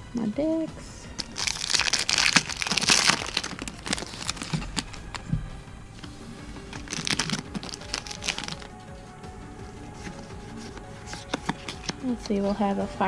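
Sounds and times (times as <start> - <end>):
foil wrapper crinkling: 1.2 - 5.3, 6.0 - 8.8, 9.7 - 12.0.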